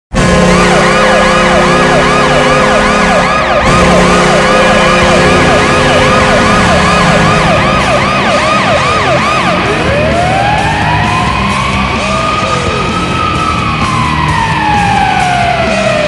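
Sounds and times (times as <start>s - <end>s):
goal horn chord: 0.1s - 9.6s
siren sweeping up and down: 0.1s - 16.0s.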